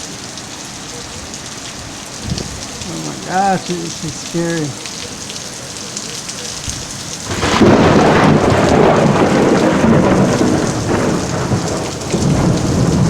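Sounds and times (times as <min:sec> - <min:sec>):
heavy rain falling: 0:00.0 - 0:13.0
thunder rumbling: 0:02.2 - 0:04.0, 0:06.7 - 0:13.0.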